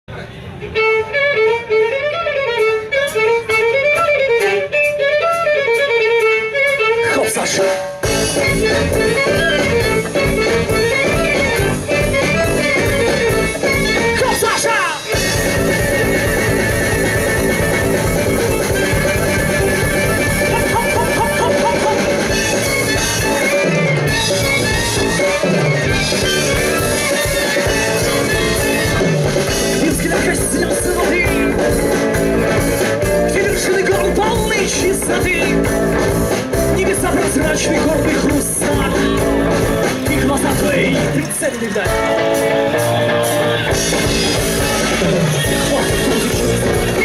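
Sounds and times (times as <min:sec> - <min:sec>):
band playing guitar over beat: 0:00.4 - 0:47.0
violin passage: 0:15.1 - 0:29.9.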